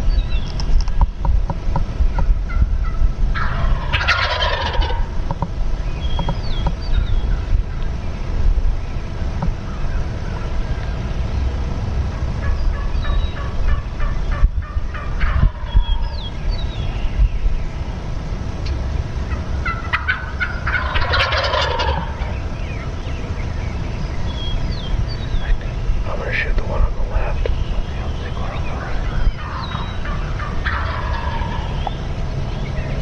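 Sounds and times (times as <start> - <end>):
turkeys gobbling: 2.1 - 5.4, 9.6 - 11.0, 12.1 - 16.3, 19.2 - 23.2, 24.8 - 32.6.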